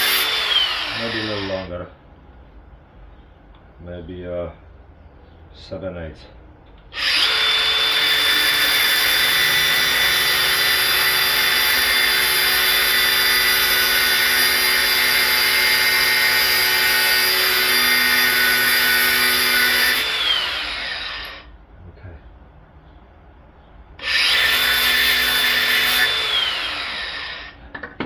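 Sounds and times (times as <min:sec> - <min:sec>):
power tool whining: 0:00.0 - 0:01.7, 0:07.0 - 0:21.5, 0:24.0 - 0:27.6.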